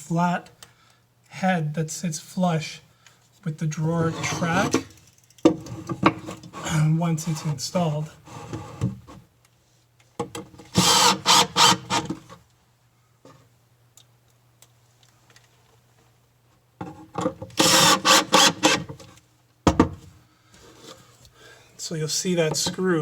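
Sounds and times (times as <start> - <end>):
power driver driving screws: 10.8 - 12.1, 17.6 - 18.9.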